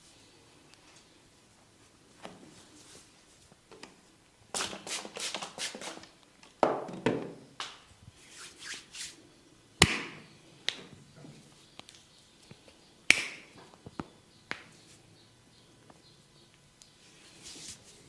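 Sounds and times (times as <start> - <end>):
hands striking a head: 9.8 - 10.8, 13.1 - 13.5
hair crackling snaps: 13.1 - 13.6.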